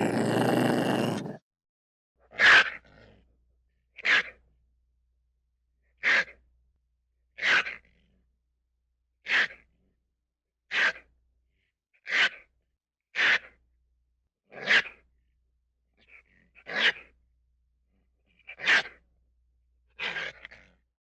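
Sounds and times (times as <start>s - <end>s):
breathy dinosaur vocalisations: 0.0s - 1.4s.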